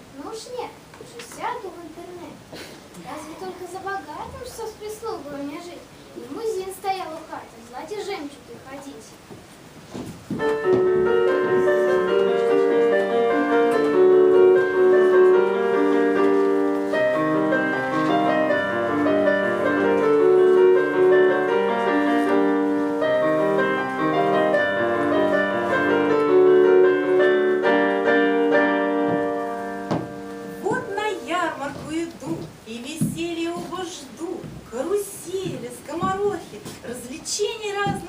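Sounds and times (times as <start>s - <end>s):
piano music: 10.3s - 36.5s.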